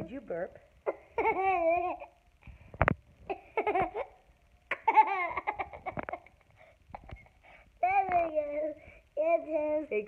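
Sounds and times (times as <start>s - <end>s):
toddler giggling: 0.9s - 2.1s, 3.3s - 7.4s.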